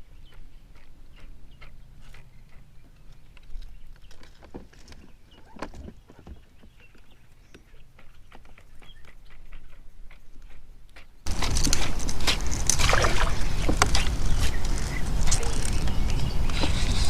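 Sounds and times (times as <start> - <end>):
gear knocking against kayak: 11.3 - 17.0.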